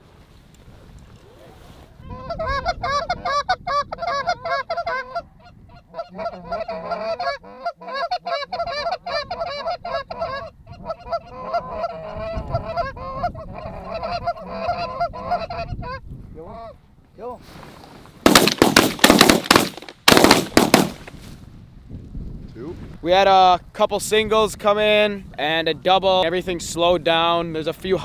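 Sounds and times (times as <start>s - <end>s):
geese honking and clucking: 2.0s - 16.0s.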